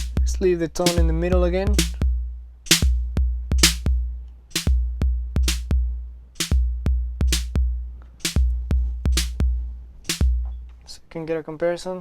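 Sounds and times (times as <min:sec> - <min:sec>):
hissy snare hits: 0:00.0 - 0:00.2, 0:02.7 - 0:03.0, 0:03.6 - 0:03.9, 0:08.2 - 0:08.5, 0:10.1 - 0:10.4
sharp drum machine clicks: 0:00.0 - 0:02.1, 0:02.7 - 0:04.8, 0:05.4 - 0:05.8, 0:06.4 - 0:07.6, 0:08.2 - 0:09.4, 0:10.1 - 0:10.4
low bass-drum hits: 0:00.0 - 0:10.6.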